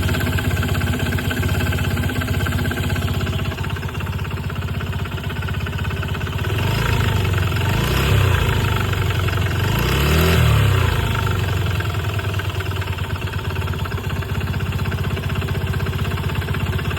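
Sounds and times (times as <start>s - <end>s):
scooter engine idling with knocking rattle: 0.0s - 16.9s
engine revving: 6.4s - 11.8s.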